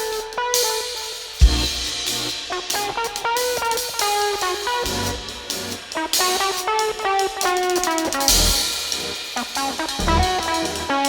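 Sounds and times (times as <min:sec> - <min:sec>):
drum kit: 0:00.0 - 0:11.0
heavy low drum hit: 0:01.4 - 0:02.5.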